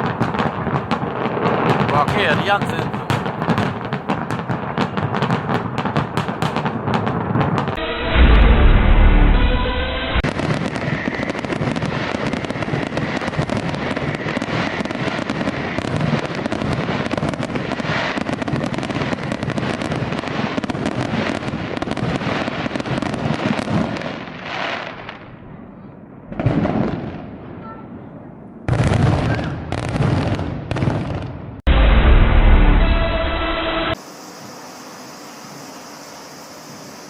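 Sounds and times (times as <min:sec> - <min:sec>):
firework crackling: 0:00.0 - 0:08.5, 0:10.2 - 0:25.4
firework deep boom: 0:00.0 - 0:22.3, 0:28.6 - 0:34.0.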